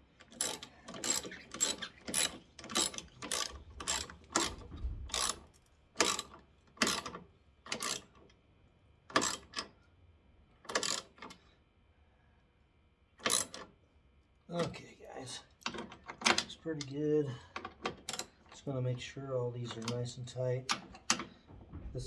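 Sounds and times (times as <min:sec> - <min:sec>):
hand ratchet clicking: 0:00.2 - 0:05.4.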